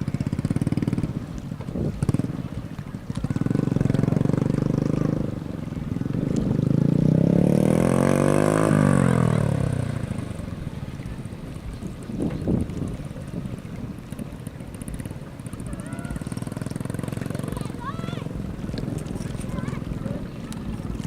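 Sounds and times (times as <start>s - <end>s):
vehicle engines running: 0.0s - 21.0s
vehicle passing by: 2.0s - 11.8s, 14.8s - 21.0s.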